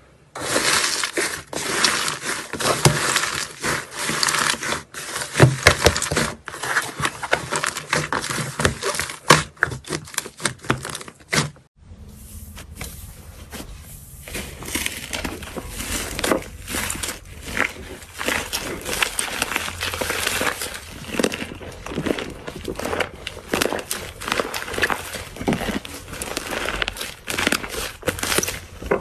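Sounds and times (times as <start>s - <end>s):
slime crackling and popping: 0.4s - 11.0s, 14.7s - 29.0s
low hum: 11.8s - 23.5s.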